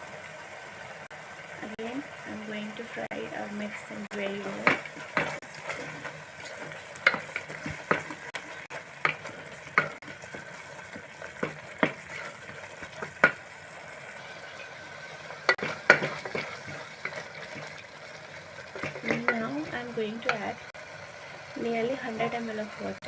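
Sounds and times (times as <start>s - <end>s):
food sizzling in a pot: 0.0s - 23.0s
spatula scraping a pot: 9.0s - 13.4s, 15.5s - 17.8s.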